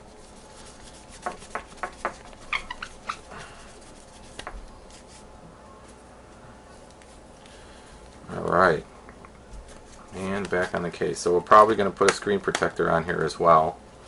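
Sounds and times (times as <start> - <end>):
cloth squeaking on glass screen: 2.0 - 3.5.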